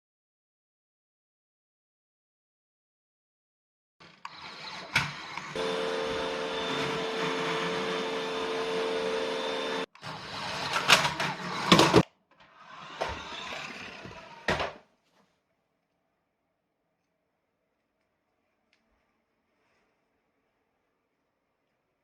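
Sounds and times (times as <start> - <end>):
small electric motor whirring: 4.0 - 14.5.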